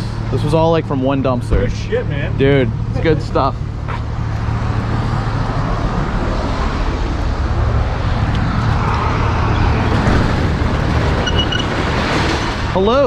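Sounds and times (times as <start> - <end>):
rushing noise: 4.6 - 13.0.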